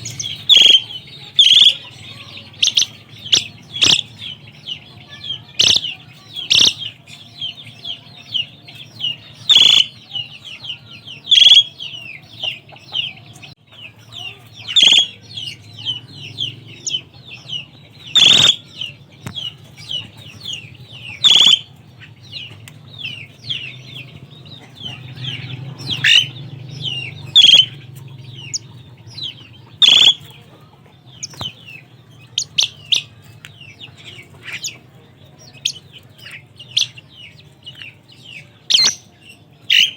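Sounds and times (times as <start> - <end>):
loud sharp bird call: 0.0 - 12.5, 14.6 - 30.4
starling chattering: 0.0 - 39.9.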